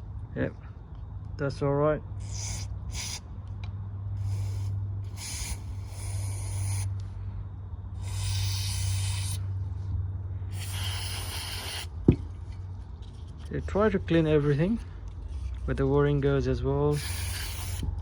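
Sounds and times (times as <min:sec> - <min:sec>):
aerosol spray hissing blasts: 0:02.2 - 0:03.2, 0:04.2 - 0:06.9, 0:08.0 - 0:09.4, 0:10.5 - 0:11.9, 0:16.9 - 0:17.9.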